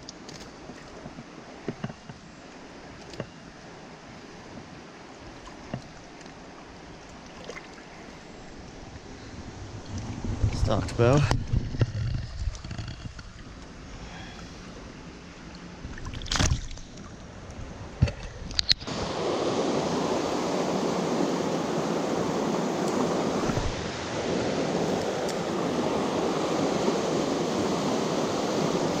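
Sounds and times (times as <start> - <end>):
river water rushing: 0.0 - 11.2, 18.9 - 29.0
low wind rumble: 0.7 - 29.0.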